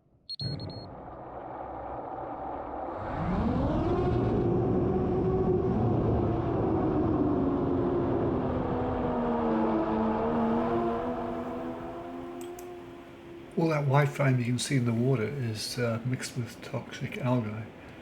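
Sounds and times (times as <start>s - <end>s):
short high beep: 0.3s - 0.9s
drone motors buzzing whine: 10.3s - 13.6s.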